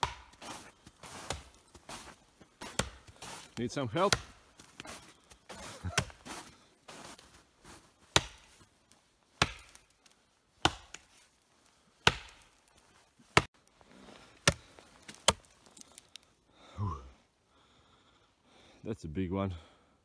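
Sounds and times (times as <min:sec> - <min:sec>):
axe chopping wood: 0:00.0 - 0:00.5, 0:01.2 - 0:01.6, 0:02.6 - 0:03.1, 0:04.0 - 0:04.4, 0:05.9 - 0:06.2, 0:08.1 - 0:08.6, 0:09.4 - 0:09.9, 0:10.6 - 0:11.1, 0:12.0 - 0:12.6, 0:14.4 - 0:15.8.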